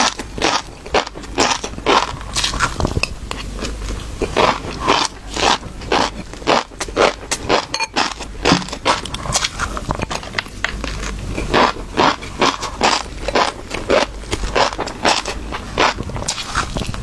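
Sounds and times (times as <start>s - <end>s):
fish roe crackling and crunching: 0.0s - 17.0s.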